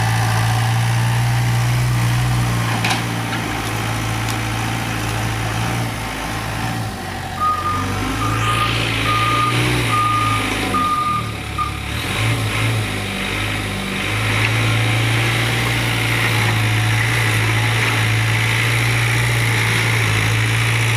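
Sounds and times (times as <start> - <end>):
diesel engine running: 0.0 - 20.9
travel alarm beeping: 7.4 - 11.8.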